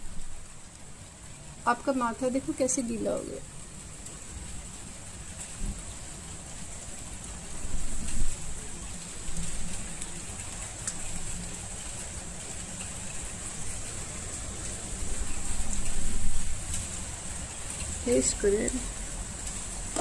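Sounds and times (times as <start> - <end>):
rain falling: 0.0 - 20.0.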